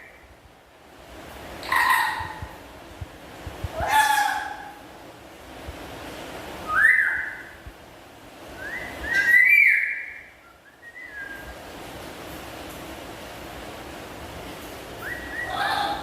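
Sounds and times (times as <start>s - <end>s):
parrot whistled calls: 1.6s - 2.4s, 6.7s - 7.5s, 8.6s - 11.5s, 15.0s - 16.0s.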